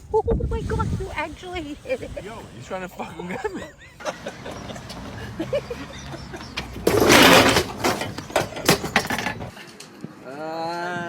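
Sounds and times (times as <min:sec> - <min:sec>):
loud crash: 0:04.2 - 0:09.5.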